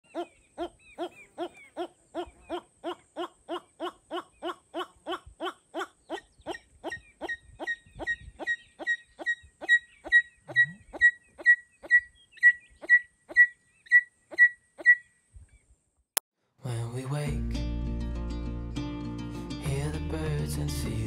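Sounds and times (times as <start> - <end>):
bird hooting: 0.1 - 15.1.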